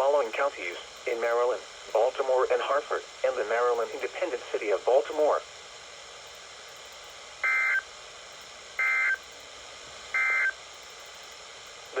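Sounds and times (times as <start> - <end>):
faint radio hiss: 0.0 - 6.2
digital data tone bursts: 10.2 - 10.5.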